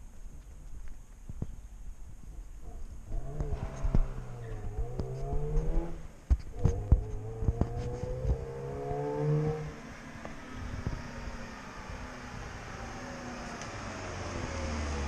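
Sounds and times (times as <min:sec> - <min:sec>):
car engine accelerating: 0:02.6 - 0:15.0.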